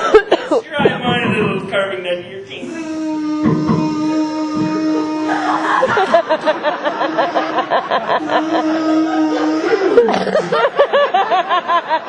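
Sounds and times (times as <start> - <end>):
person imitating buzzing knife: 2.6 - 5.8, 8.2 - 10.6.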